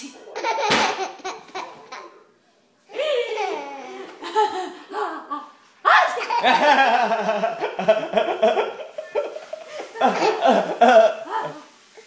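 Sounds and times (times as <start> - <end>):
young children laughing: 3.0 - 11.7.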